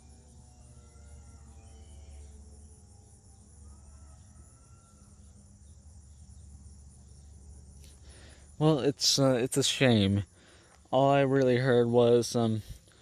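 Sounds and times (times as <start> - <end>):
distant tornado siren: 0.0 - 5.3
insects chirping: 0.0 - 13.0.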